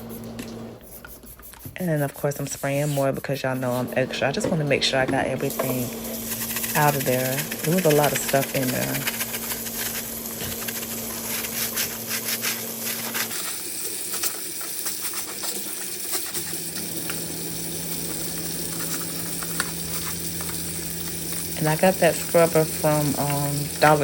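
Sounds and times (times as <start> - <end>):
steady background hum: 0.0 - 24.0
scrubber scratching plastic filter: 1.0 - 16.8, 18.1 - 20.7.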